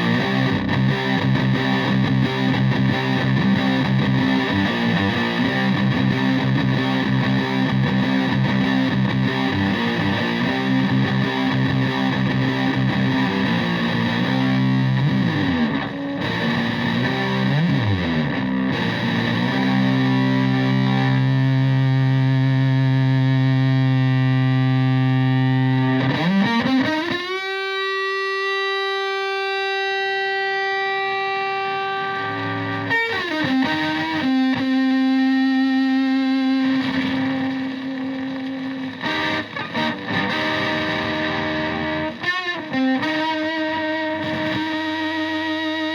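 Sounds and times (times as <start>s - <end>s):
fuzz electric guitar notes: 0.0s - 45.9s.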